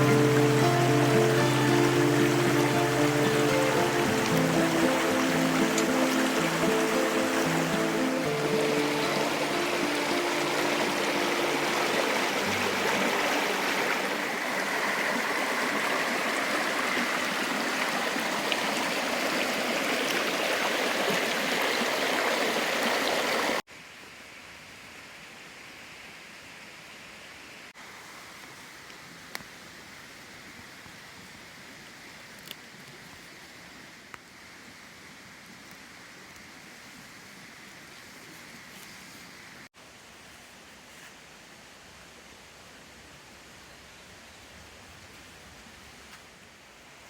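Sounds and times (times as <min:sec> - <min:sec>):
creek water flowing: 0:00.0 - 0:23.6.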